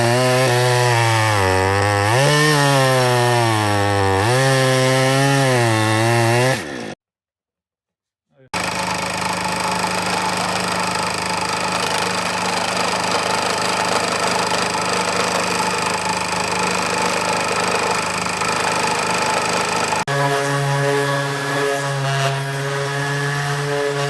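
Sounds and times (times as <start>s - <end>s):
engine idling: 8.6s - 20.1s.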